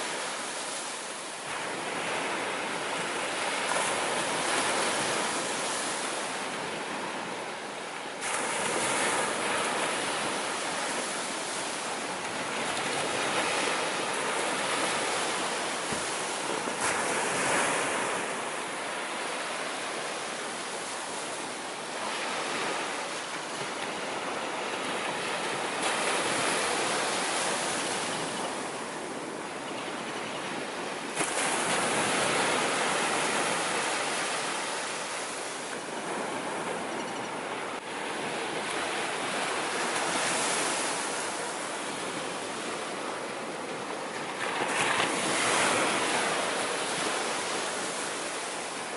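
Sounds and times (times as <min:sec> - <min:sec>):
sea waves surging: 0:00.0 - 0:48.9.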